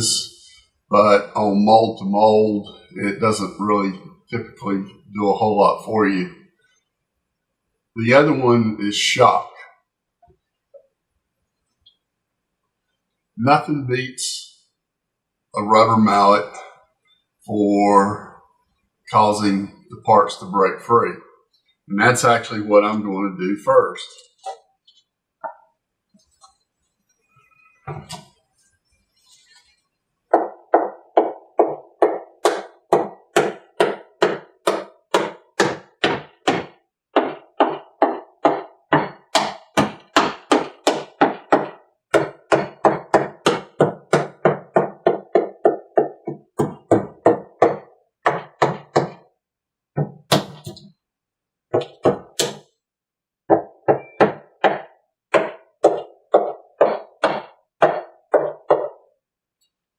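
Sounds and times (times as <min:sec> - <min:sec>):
rubber mallet beating on fiberglass: 0:30.4 - 0:49.2.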